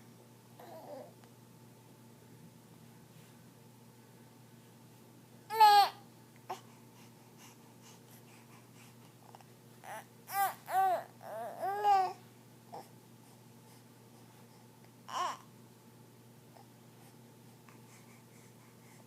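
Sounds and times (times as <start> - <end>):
baby babbling: 0.6 - 1.1, 5.5 - 6.6, 9.8 - 12.2, 15.1 - 15.5.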